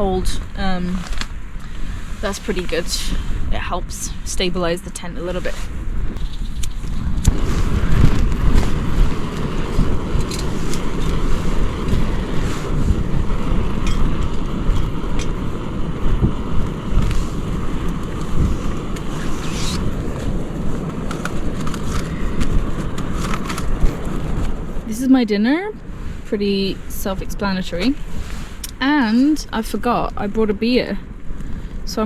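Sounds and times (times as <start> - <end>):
strong wind gusting: 0.0 - 32.0
tent fabric flapping: 6.6 - 24.8.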